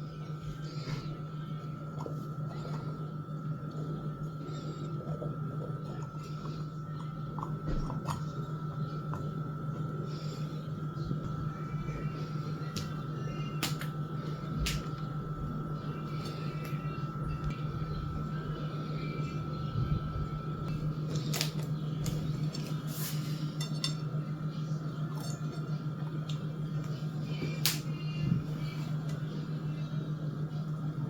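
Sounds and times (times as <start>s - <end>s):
steady low hum: 0.0s - 31.0s.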